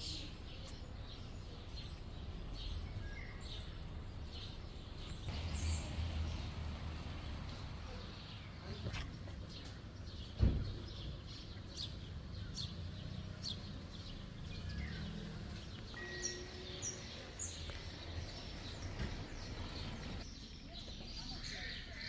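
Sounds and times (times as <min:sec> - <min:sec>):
small birds chirping: 0:00.0 - 0:22.0
sharp thump: 0:10.4 - 0:10.9.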